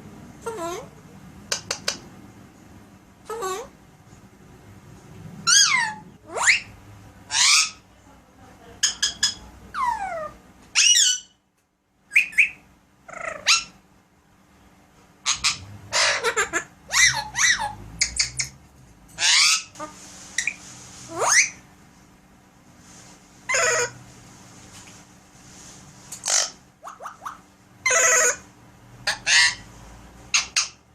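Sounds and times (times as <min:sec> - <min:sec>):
parakeet squawks and whistles: 0:05.4 - 0:07.8, 0:10.8 - 0:11.4, 0:12.1 - 0:13.8, 0:15.3 - 0:18.6, 0:19.2 - 0:21.6, 0:23.5 - 0:24.0, 0:26.2 - 0:28.4, 0:29.0 - 0:29.7.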